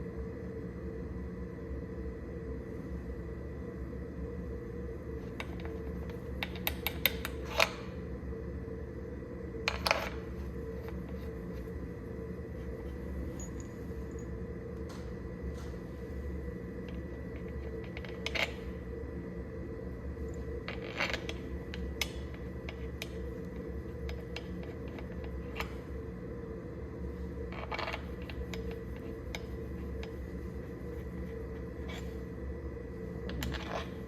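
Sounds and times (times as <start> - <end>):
high machine hum: 0.0 - 34.0
metallic clinks and scrapes: 12.6 - 14.3, 33.3 - 34.0.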